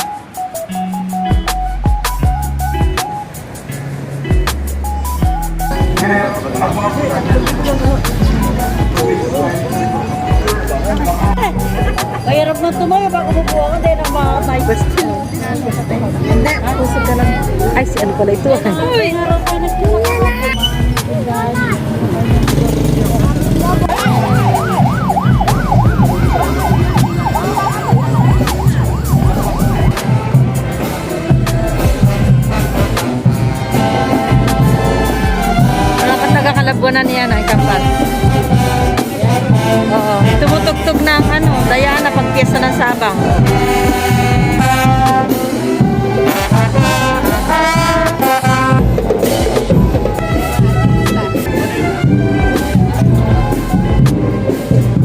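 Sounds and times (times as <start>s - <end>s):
band music with heavy beat: 0.0s - 55.0s
drum strokes: 0.0s - 55.0s
siren yelping: 22.9s - 30.4s.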